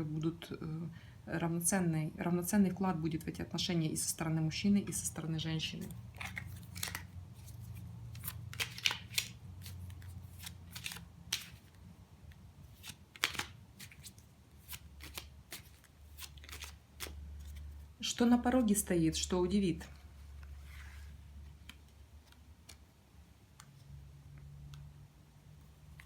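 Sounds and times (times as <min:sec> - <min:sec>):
cards being shuffled: 0:05.7 - 0:17.9, 0:20.4 - 0:22.9.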